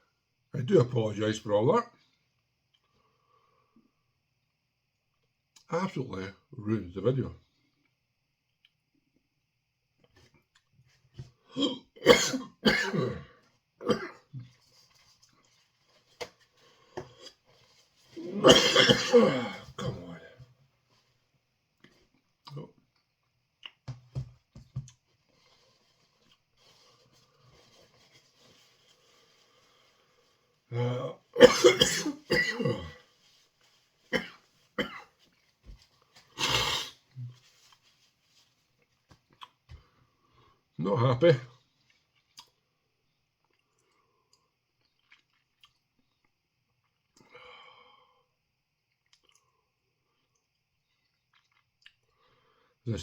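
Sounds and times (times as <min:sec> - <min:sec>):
man clearing his throat: 0:11.5 - 0:14.2, 0:18.2 - 0:20.4, 0:30.8 - 0:33.0, 0:34.2 - 0:35.1
man coughing: 0:11.6 - 0:14.2, 0:18.2 - 0:20.4, 0:30.8 - 0:33.0, 0:34.1 - 0:35.1.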